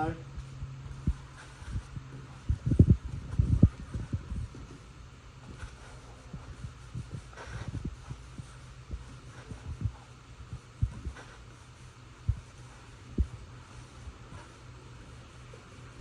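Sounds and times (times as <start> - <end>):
steady low hum: 0.0 - 16.0
low thumps and bumps: 0.3 - 4.9, 6.3 - 11.2.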